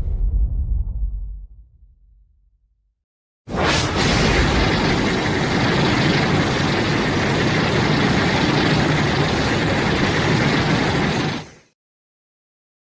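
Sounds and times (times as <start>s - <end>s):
loud steady rumbling: 3.6s - 11.5s.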